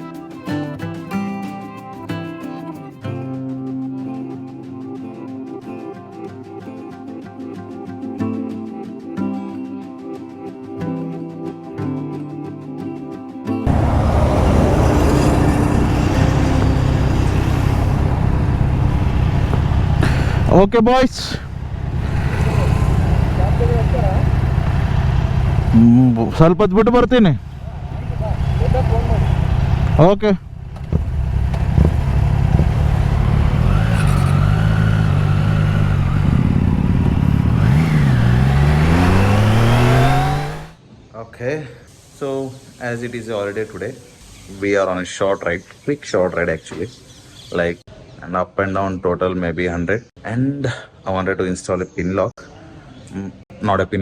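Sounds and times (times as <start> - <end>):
motorcycle engine roar: 13.7 - 40.8.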